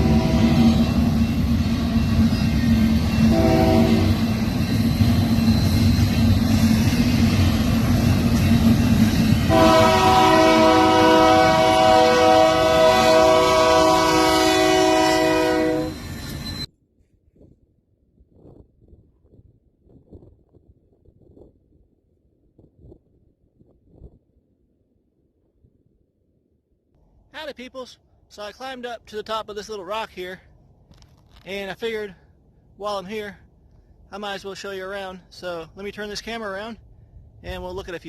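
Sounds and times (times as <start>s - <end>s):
train air horn: 0.0s - 1.2s, 3.1s - 4.4s, 9.4s - 16.1s
train rumbling past: 0.0s - 16.7s.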